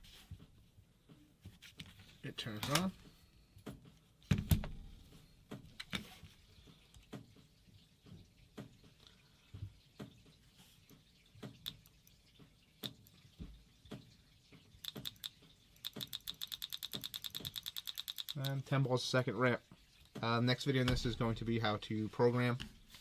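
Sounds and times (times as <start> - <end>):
paintball marker clicking: 14.9 - 18.6.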